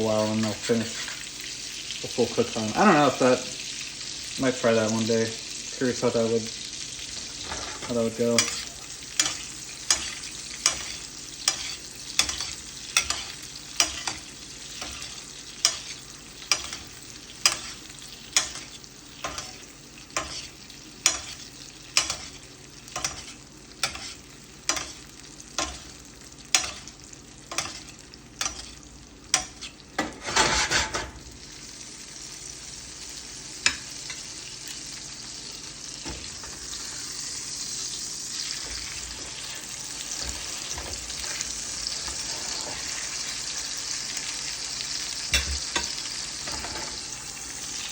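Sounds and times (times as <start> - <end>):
steak sizzling in a frying pan: 0.0 - 47.9
utensil clicking against pan: 9.2 - 20.4, 21.0 - 22.3, 24.7 - 25.0.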